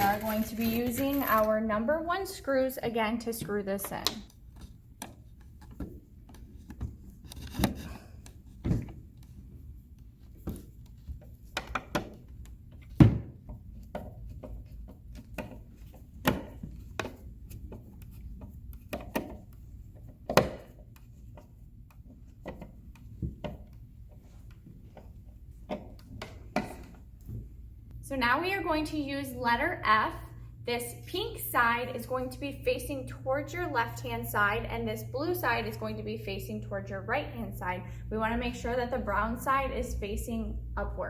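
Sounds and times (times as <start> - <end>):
plastic panels clicking and knocking: 11.4 - 17.8.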